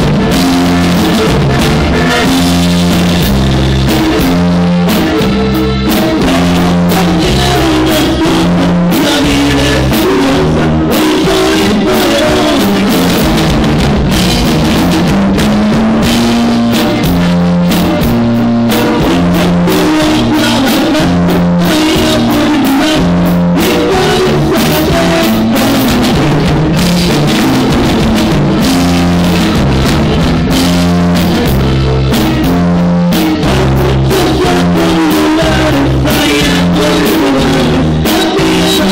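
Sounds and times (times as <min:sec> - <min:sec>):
band playing with drums and strings: 0:00.0 - 0:38.9
drum kit: 0:00.0 - 0:38.9
stepping bass line: 0:00.0 - 0:38.9.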